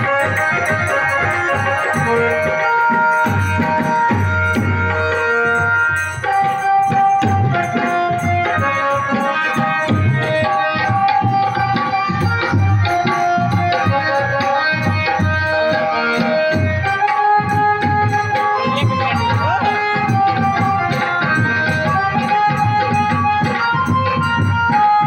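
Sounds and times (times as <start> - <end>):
loud music with drum beats: 0.0 - 25.0.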